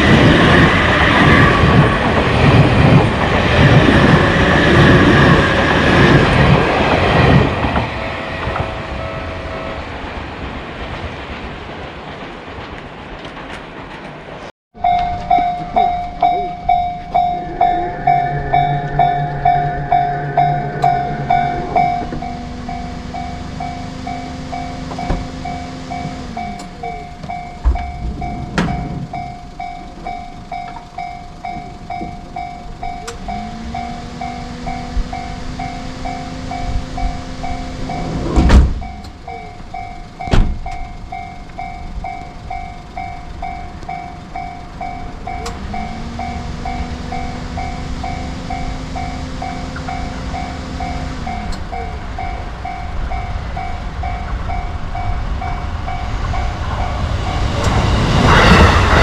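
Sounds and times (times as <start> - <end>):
railroad crossing bell ringing: 0.0 - 11.4, 14.8 - 59.0
train rumble: 0.0 - 59.0
low sliding tone: 14.8 - 59.0.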